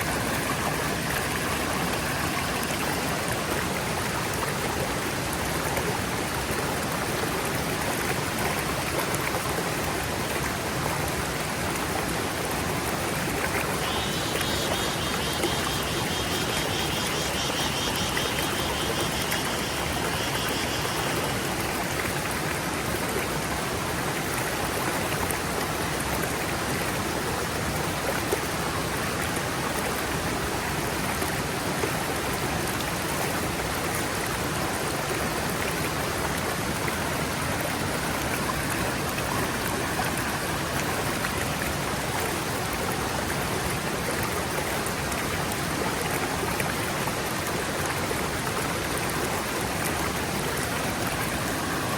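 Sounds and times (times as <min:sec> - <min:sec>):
stream flowing over rocks: 0:00.0 - 0:51.9
faint high pulsing sound: 0:13.8 - 0:21.6.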